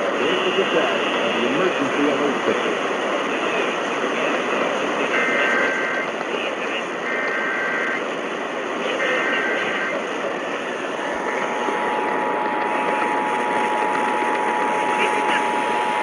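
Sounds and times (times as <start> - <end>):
radio static: 0.0 - 16.0
two-tone attention signal: 5.1 - 6.1, 7.0 - 8.0, 9.0 - 10.0.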